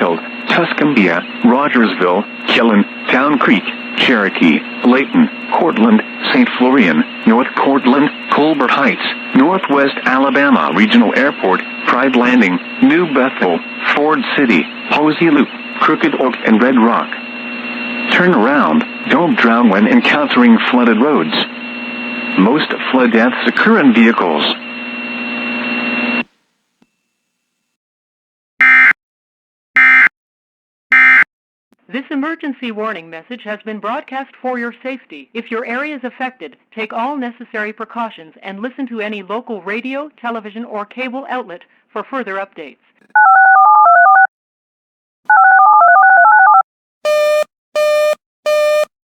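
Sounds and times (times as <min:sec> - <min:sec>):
steady noisy hum: 0:00.0 - 0:26.3
telephone touch tones: 0:43.2 - 0:44.3, 0:45.3 - 0:48.9.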